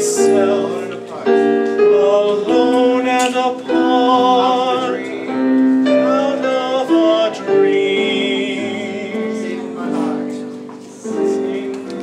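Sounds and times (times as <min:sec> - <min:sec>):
person singing long notes: 0:00.0 - 0:10.4
piano chords: 0:00.0 - 0:12.0.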